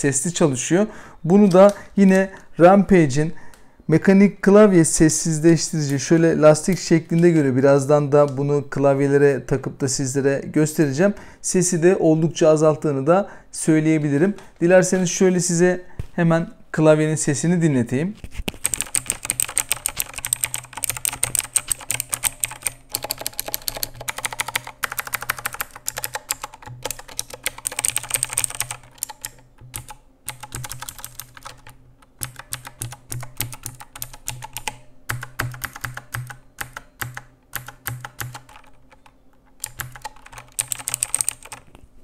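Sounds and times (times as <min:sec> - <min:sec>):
mechanical keyboard typing clicks: 0:01.4 - 0:01.8, 0:18.5 - 0:41.8.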